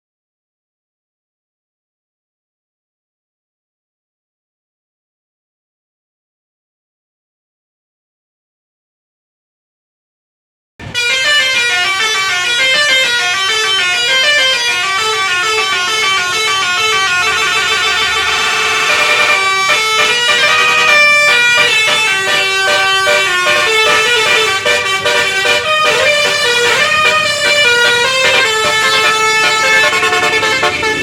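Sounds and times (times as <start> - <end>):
musical air horn tune: 10.9 - 31.0.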